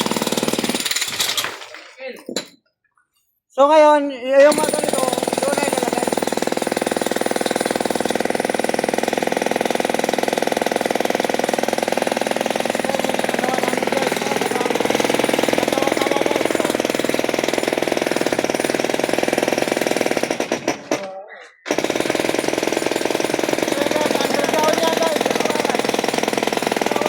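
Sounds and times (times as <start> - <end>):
jackhammer hammering: 0.0 - 1.7, 4.4 - 27.0.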